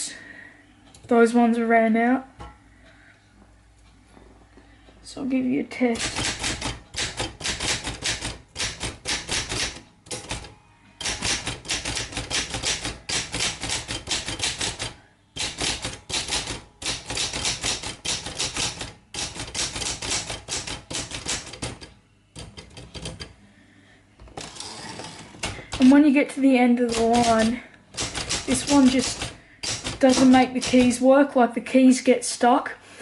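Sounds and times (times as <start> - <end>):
manual typewriter typing: 5.8 - 23.4, 24.3 - 26.1, 26.8 - 31.1.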